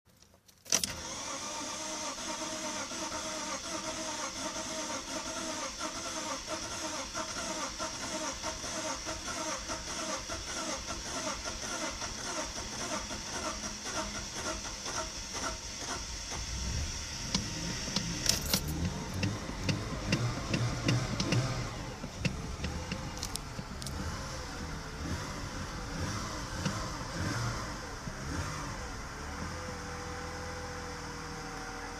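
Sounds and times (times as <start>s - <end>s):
car engine cranking and starting: 0.4s - 31.9s
sharp engine clicks: 17.3s - 24.2s.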